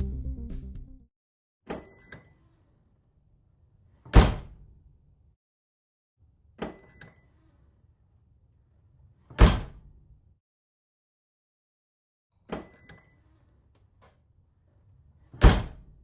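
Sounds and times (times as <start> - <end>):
car trunk slamming shut: 4.1 - 4.5, 9.4 - 9.8, 15.4 - 15.8.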